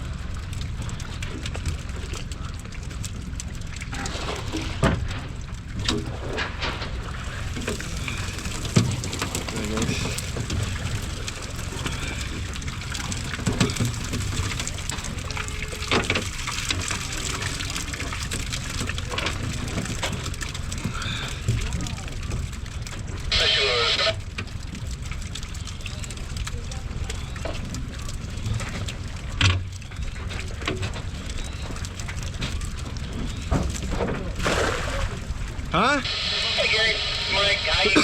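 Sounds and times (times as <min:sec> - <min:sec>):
water splashing and dripping: 0:00.0 - 0:35.8
faint voices: 0:07.3 - 0:13.2, 0:20.7 - 0:24.2, 0:25.7 - 0:30.6, 0:32.1 - 0:38.0.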